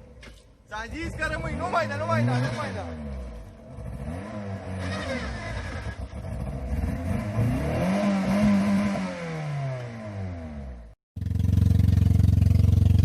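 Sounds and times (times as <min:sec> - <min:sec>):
car engine revving hard: 0:01.4 - 0:10.8.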